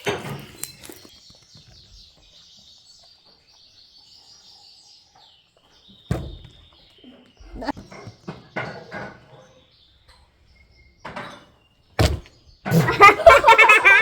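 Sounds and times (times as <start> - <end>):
faint bird chirping: 0.0 - 13.2
thump: 6.1 - 6.6, 12.0 - 12.8.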